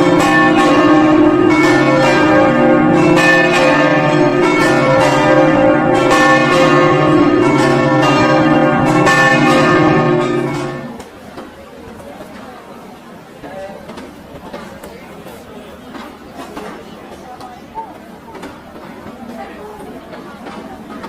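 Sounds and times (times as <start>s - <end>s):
church bells pealing: 0.0s - 11.0s.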